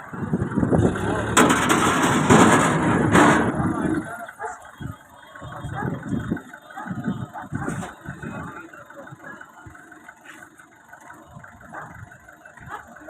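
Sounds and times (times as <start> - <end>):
engine rumbling: 0.0 - 13.0.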